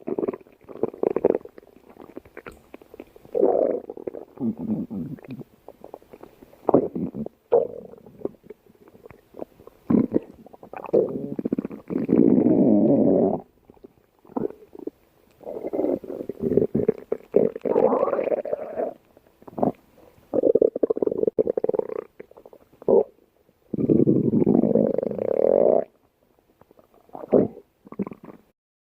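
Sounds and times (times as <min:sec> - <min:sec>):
stomach growling: 0:00.0 - 0:26.0, 0:26.6 - 0:28.5.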